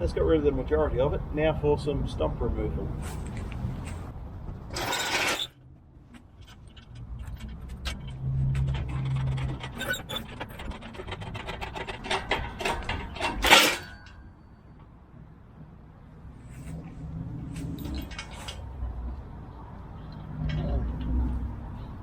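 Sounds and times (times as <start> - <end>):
loud scrapes: 4.7 - 5.6, 7.4 - 14.0.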